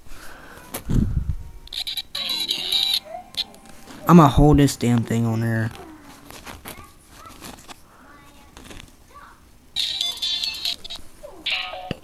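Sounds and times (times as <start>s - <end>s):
tinny music from toy speaker: 1.4s - 6.6s, 9.8s - 12.0s.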